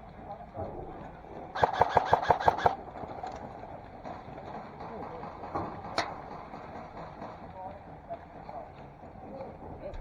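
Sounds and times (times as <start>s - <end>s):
outdoor background: 0.0s - 10.0s
airsoft gun firing: 1.6s - 2.8s.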